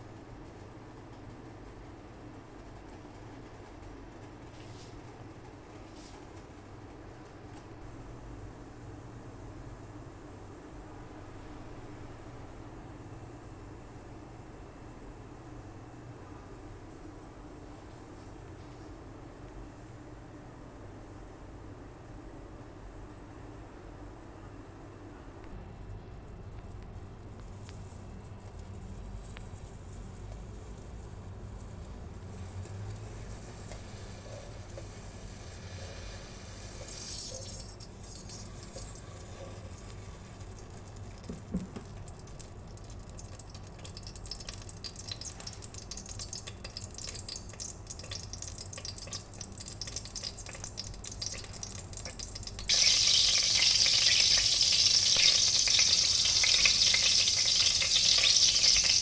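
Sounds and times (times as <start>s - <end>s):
chicken sizzling in a pan: 43.2s - 59.0s.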